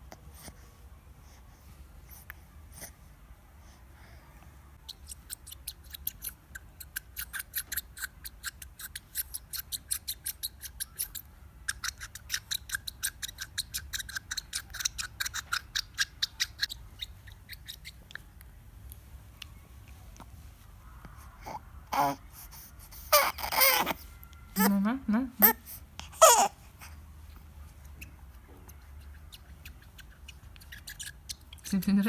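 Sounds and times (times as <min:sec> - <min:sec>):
baby's teether squeaking: 0:04.9 - 0:18.1, 0:22.9 - 0:24.0, 0:25.4 - 0:26.5, 0:29.1 - 0:31.6.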